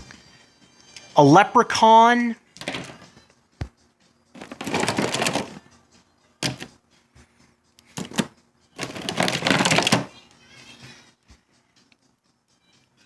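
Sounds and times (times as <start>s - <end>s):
plastic figures clicking and clattering: 2.6s - 3.0s, 4.4s - 5.6s, 6.4s - 6.7s, 7.9s - 10.1s.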